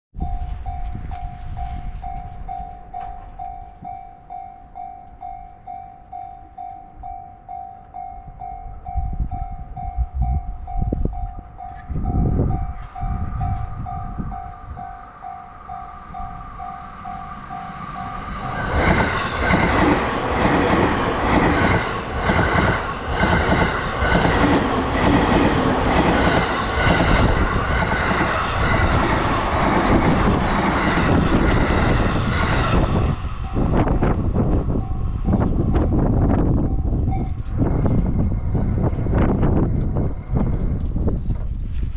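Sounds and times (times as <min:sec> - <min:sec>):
level crossing bell ringing: 0:00.2 - 0:18.6.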